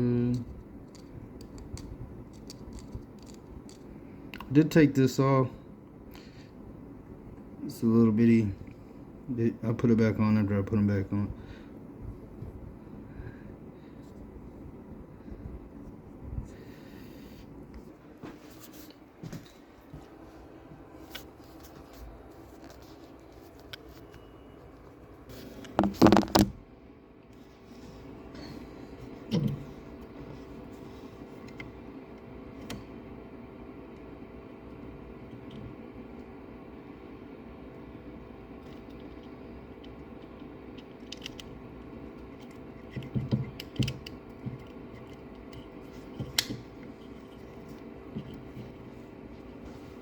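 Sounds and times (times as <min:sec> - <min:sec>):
steady low hum: 0:00.0 - 0:50.0
clicks of plastic parts handled: 0:00.3 - 0:04.5
knocks and clatter of tools: 0:25.7 - 0:26.5.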